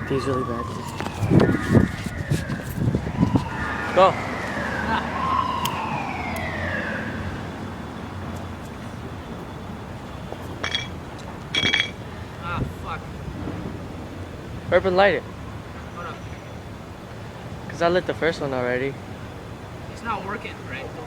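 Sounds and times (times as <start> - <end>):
siren wailing: 0.0 - 10.0
emergency vehicle siren wailing: 0.0 - 21.0
street traffic rumble: 0.0 - 21.0
bumps and rustles near microphone: 0.2 - 4.0.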